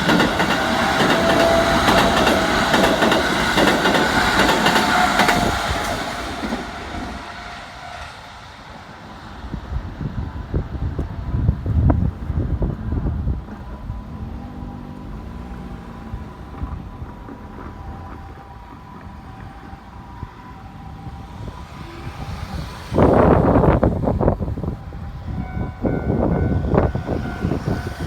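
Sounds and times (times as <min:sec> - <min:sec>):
train wheels clattering over rails: 0:00.0 - 0:07.5.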